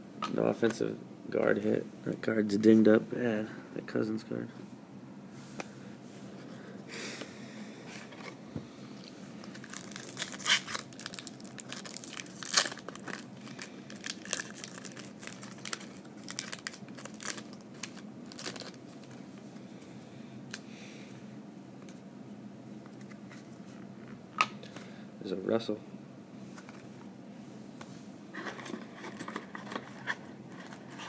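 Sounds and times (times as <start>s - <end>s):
foil wrapper tearing and crinkling: 9.5s - 19.1s.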